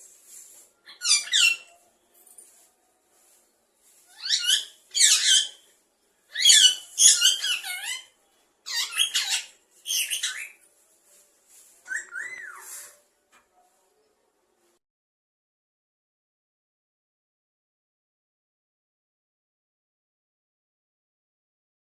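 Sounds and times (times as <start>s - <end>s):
parrot chirping and squeaking: 0.8s - 1.8s, 4.0s - 5.7s, 6.3s - 10.6s, 11.8s - 13.0s
parrot whistle: 11.8s - 12.9s.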